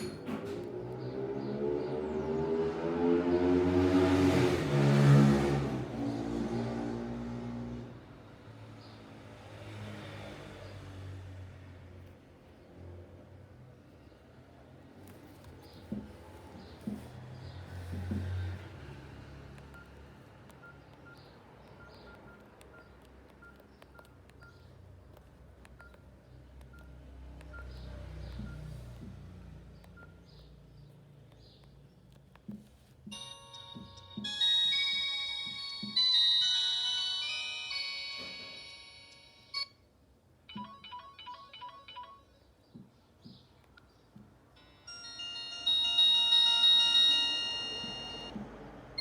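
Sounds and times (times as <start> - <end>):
phone ringtone tones: 33.1 - 42.5, 44.6 - 48.4.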